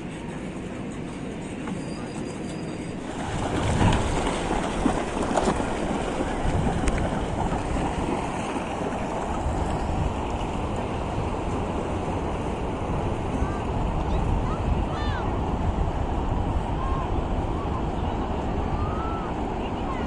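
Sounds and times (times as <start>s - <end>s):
sea waves washing onto beach: 2.9s - 20.0s
wind buffeting microphone: 2.9s - 20.0s.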